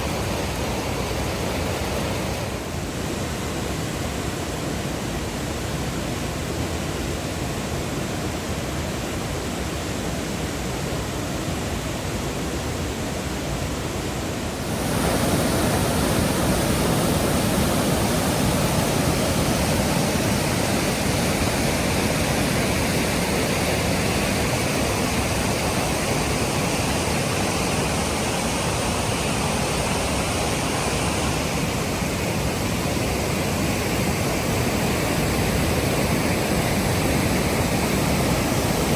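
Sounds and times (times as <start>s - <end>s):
waterfall rushing: 0.0s - 5.2s, 14.1s - 38.9s.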